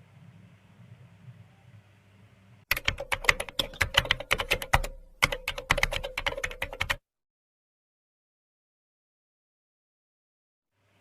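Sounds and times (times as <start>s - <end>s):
computer keyboard typing: 2.7s - 7.0s.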